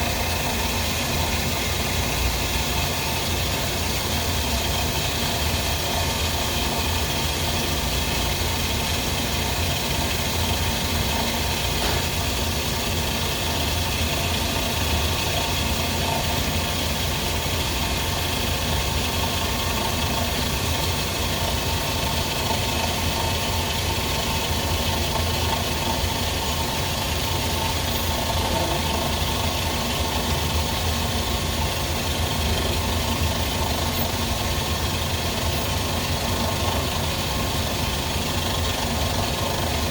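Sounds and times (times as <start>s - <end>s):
machine low hum: 23.0s - 39.9s.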